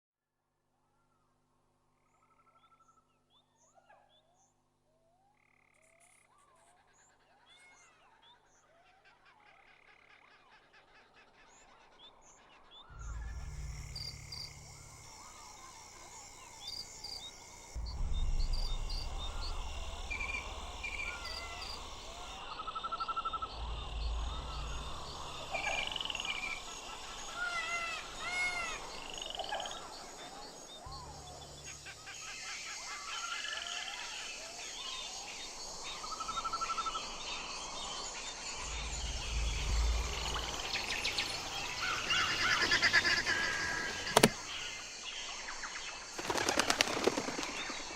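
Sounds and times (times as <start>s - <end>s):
low rumble: 12.9s - 29.0s, 30.9s - 32.1s, 38.5s - 44.0s
steady high hiss: 12.9s - 47.9s
seabirds whistled calls: 38.6s - 44.8s.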